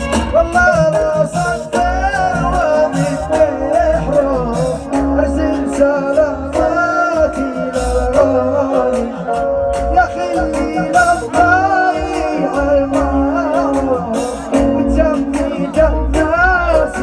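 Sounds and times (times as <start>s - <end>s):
backing track with percussion: 0.0s - 17.0s
man singing: 0.0s - 17.0s.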